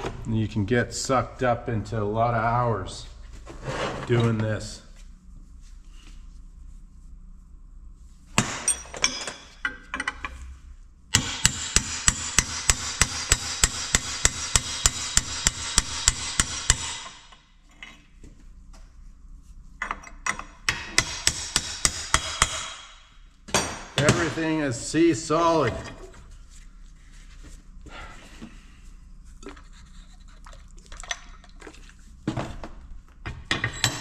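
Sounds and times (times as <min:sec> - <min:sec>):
hammer striking metal: 0:11.1 - 0:17.3, 0:20.7 - 0:24.4.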